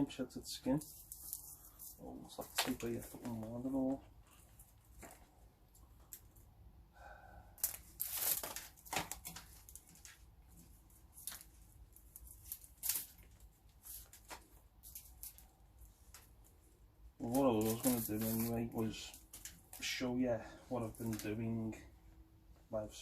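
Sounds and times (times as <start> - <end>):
plastic tape rustling and ripping: 0.6 - 6.5, 7.6 - 16.5, 17.2 - 20.0, 20.7 - 21.5.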